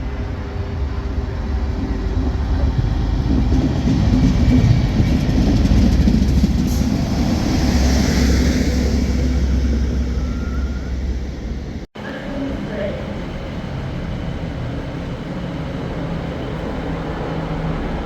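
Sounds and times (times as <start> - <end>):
train passing with rumble: 0.0 - 18.0.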